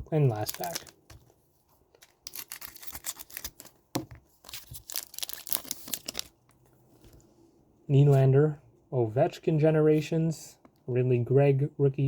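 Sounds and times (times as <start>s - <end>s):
wrapper tearing and crinkling: 0.2s - 1.1s, 2.0s - 3.8s, 4.4s - 6.3s
wrapper snap: 0.3s - 1.1s.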